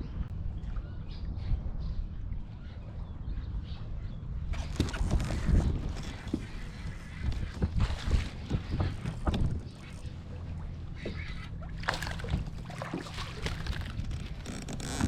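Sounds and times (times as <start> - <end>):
steady low hum: 0.0 - 15.0
gear knocking on kayak: 7.2 - 10.1.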